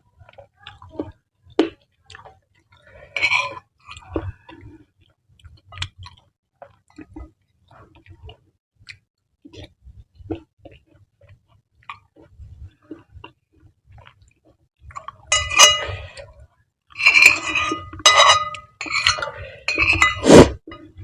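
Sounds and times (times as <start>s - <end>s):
soft chewing: 0.0s - 20.0s
utensils clinking on dishware: 15.3s - 16.2s, 17.0s - 20.9s.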